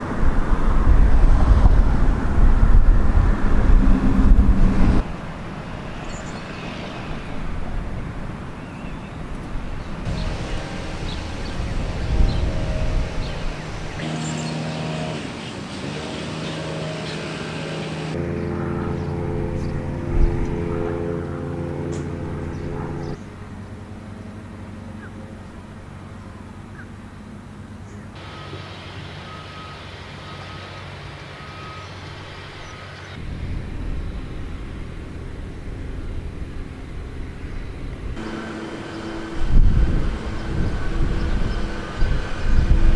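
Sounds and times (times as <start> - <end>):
low wind rumble: 0.0 - 30.3, 30.9 - 42.9
steady engine drone: 0.0 - 42.9
bird chirps: 8.6 - 17.6
reversing alarm beeping: 28.2 - 32.3.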